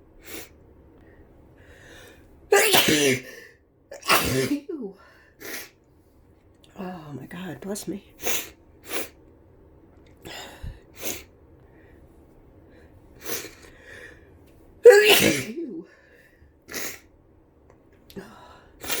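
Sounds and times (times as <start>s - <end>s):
woman sneezing: 2.5s - 3.4s, 4.0s - 5.7s, 14.8s - 16.0s
short quick breaths: 12.7s - 14.4s.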